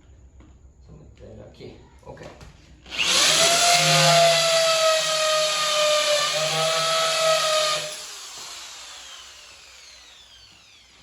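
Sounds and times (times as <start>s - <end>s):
power drill whining: 2.9s - 11.0s.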